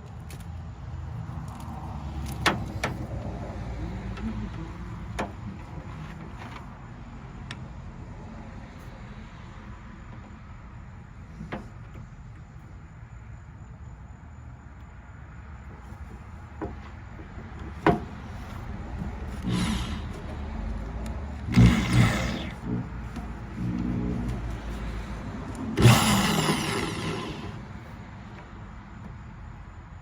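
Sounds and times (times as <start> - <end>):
machine grinding bursts: 18.4 - 27.9
wire-stripping machine humming: 18.4 - 27.9
sharp knocks: 25.8 - 27.6.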